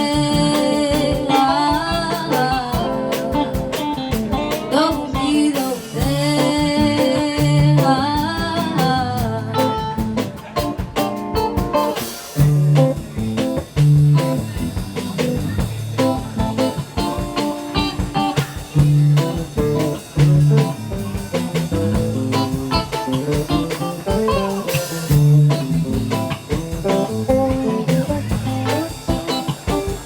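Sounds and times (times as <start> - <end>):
bass guitar: 0.0 - 30.0
drum kit: 0.0 - 30.0
guitar: 0.0 - 30.0.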